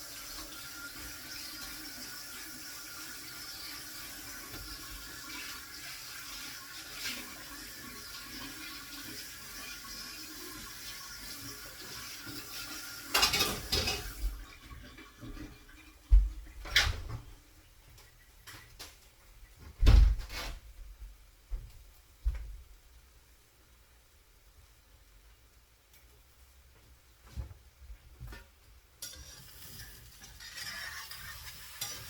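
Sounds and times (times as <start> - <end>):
kitchen tap running: 0.0 - 17.2, 29.0 - 32.0
pots or dishes clunking: 13.1 - 14.2.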